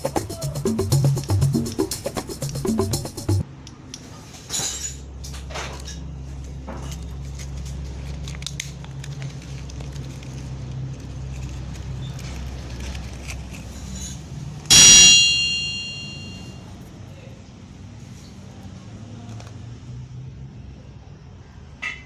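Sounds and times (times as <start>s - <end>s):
steady low hum: 0.0s - 3.4s
loud metallic clang: 14.7s - 16.5s.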